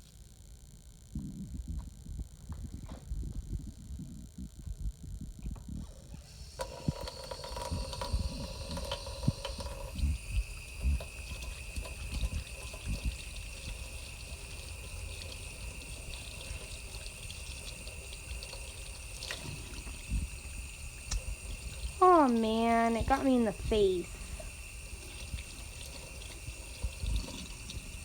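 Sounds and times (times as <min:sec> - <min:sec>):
tap water running onto sponge: 0:06.2 - 0:28.0.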